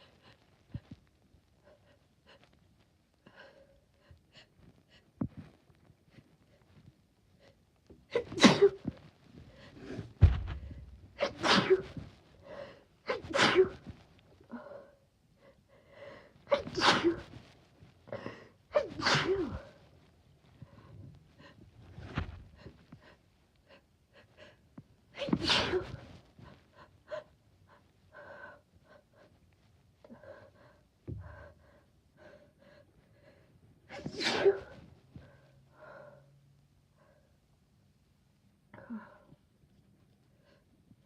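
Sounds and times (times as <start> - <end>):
woman sneezing: 11.2 - 12.0, 16.5 - 17.3, 18.8 - 19.6, 25.2 - 26.0, 33.9 - 34.8.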